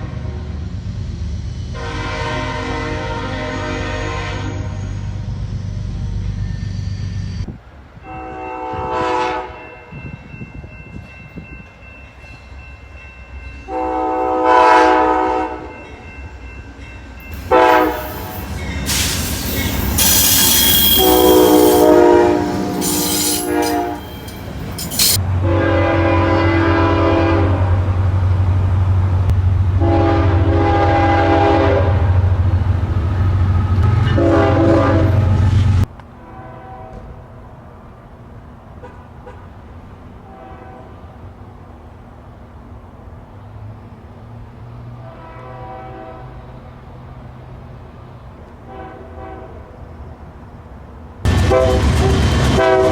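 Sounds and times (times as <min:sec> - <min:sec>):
deep train rumble: 0:00.0 - 0:52.9
distant train horn: 0:01.6 - 0:05.2, 0:08.0 - 0:10.2, 0:13.6 - 0:16.4, 0:17.3 - 0:28.1, 0:29.7 - 0:32.4, 0:33.4 - 0:35.5, 0:36.1 - 0:37.4, 0:38.8 - 0:39.6, 0:40.2 - 0:41.2, 0:44.8 - 0:46.6, 0:48.6 - 0:49.9, 0:51.3 - 0:52.9
locomotive air horn blasts: 0:01.7 - 0:05.1, 0:08.0 - 0:09.9, 0:13.7 - 0:15.7, 0:17.3 - 0:27.9, 0:29.8 - 0:32.1, 0:33.8 - 0:35.4, 0:36.2 - 0:37.2, 0:40.2 - 0:41.0, 0:45.0 - 0:46.4, 0:48.7 - 0:49.6, 0:51.3 - 0:52.9.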